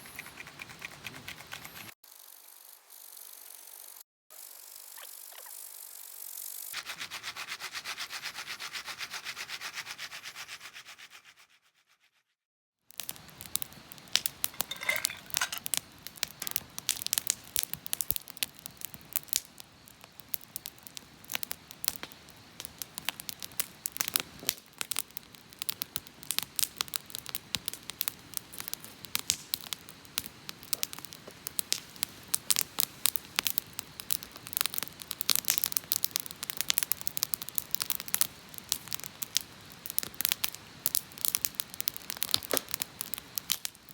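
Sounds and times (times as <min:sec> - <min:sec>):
campfire crackling and popping: 0:12.9 - 0:43.9.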